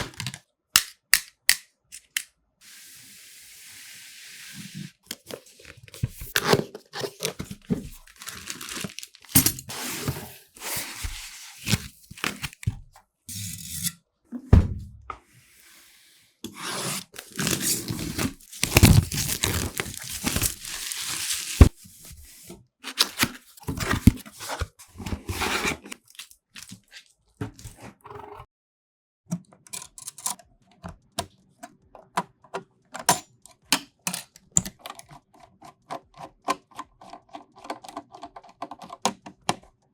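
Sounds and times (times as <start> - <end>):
plastic and cardboard crinkling: 5.1 - 12.8, 17.1 - 27.8.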